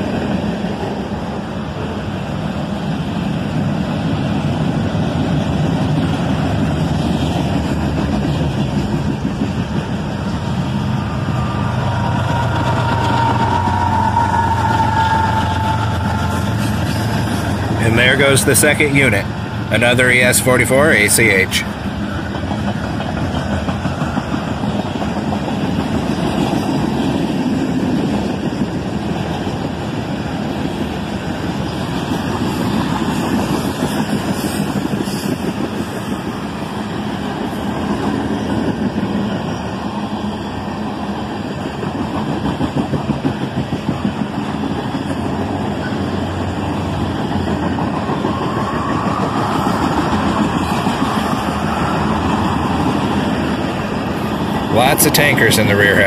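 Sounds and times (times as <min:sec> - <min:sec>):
train wheels rumbling on rail: 0:00.0 - 0:56.0
rising whine: 0:09.8 - 0:21.1.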